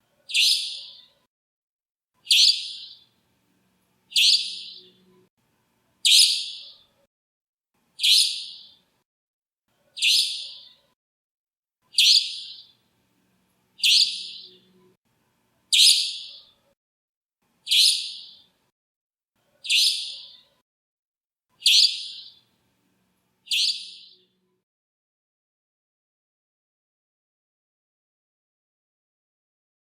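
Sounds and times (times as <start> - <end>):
nightingale calling: 0.3 - 1.2, 2.2 - 3.1, 4.1 - 5.0, 6.0 - 6.9, 8.0 - 8.8, 10.0 - 10.8, 11.9 - 12.7, 13.8 - 14.7, 15.7 - 16.5, 17.7 - 18.5, 19.6 - 20.5, 21.6 - 22.4, 23.5 - 24.3.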